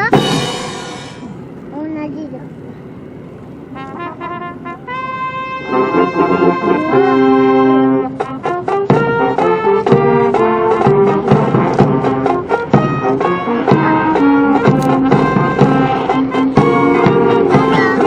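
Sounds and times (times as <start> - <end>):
military brass band playing: 0.0 - 1.6, 3.6 - 18.0
held trumpet note: 3.7 - 18.0.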